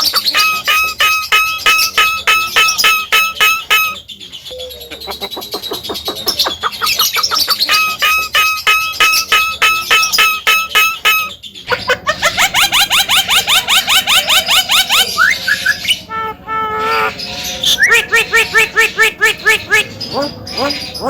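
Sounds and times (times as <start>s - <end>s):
myna singing rapid notes: 16.0s - 21.0s.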